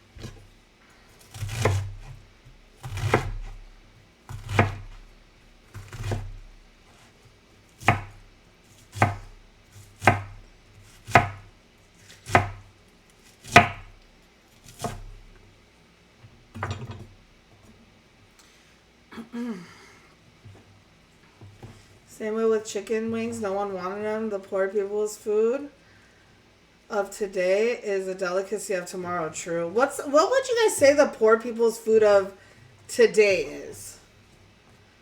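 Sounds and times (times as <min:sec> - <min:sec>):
knife chopping on cutting board: 0:01.3 - 0:02.2, 0:02.8 - 0:03.6, 0:04.3 - 0:05.0, 0:05.7 - 0:07.1, 0:07.8 - 0:11.5, 0:12.1 - 0:14.0, 0:14.6 - 0:15.2.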